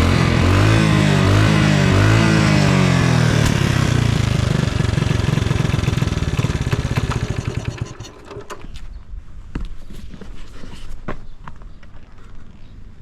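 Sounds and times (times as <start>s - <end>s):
small engine idling: 0.0s - 8.8s.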